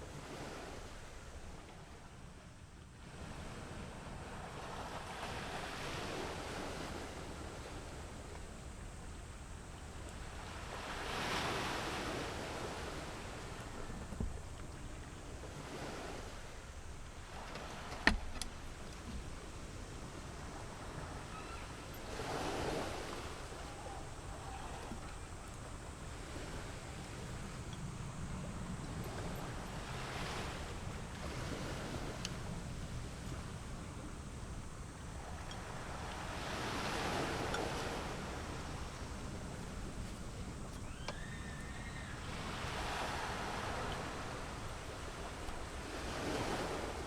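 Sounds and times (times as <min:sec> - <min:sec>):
sea waves washing onto shore: 0:03.0 - 0:47.0.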